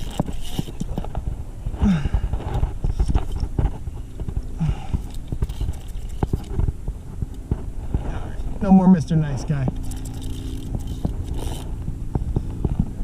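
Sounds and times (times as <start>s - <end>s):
fishing tackle clicks and knocks: 0.0s - 1.2s, 2.3s - 7.7s, 9.6s - 13.0s.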